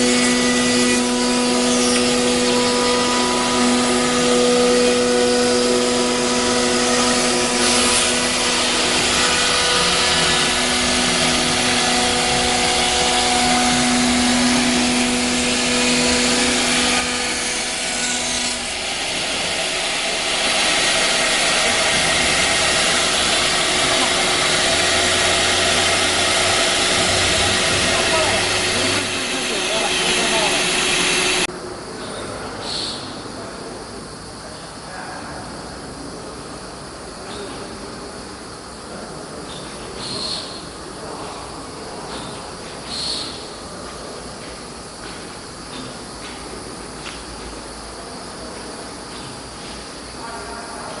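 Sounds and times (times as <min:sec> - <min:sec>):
router cutting noise: 0:00.0 - 0:31.5
spindle whine: 0:00.0 - 0:31.5.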